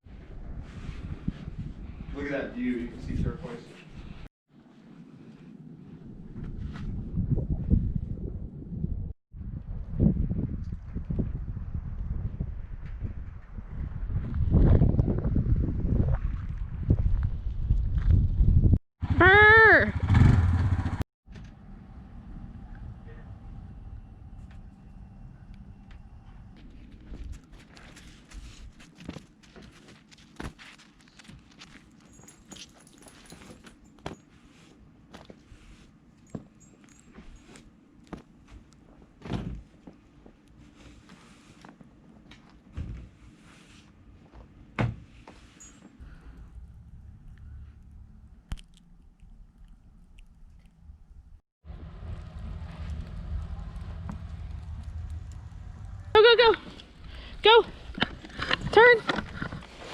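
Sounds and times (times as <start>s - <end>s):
wind gusting across microphone: 6.0s - 18.8s.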